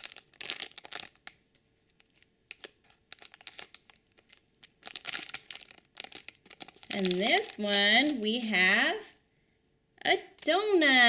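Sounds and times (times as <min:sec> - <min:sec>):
plastic bag crinkling and tearing: 0:00.0 - 0:08.4.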